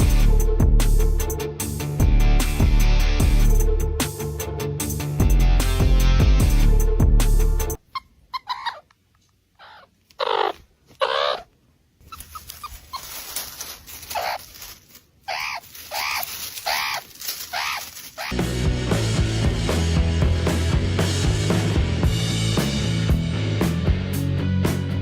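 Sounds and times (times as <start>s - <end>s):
animal whining cries: 7.8s - 8.9s, 9.6s - 11.5s, 14.0s - 14.6s, 15.2s - 18.4s.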